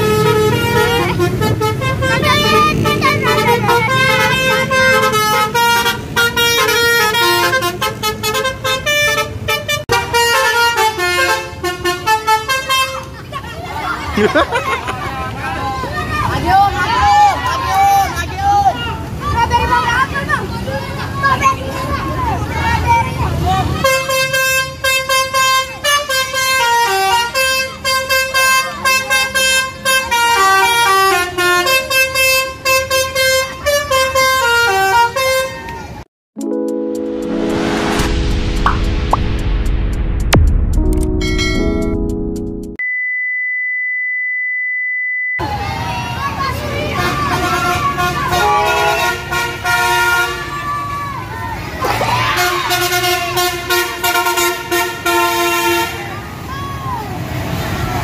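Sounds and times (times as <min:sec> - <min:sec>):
bus horn playing melody: 0:00.0 - 0:13.1, 0:23.8 - 0:35.7, 0:47.0 - 0:50.5, 0:52.4 - 0:56.0.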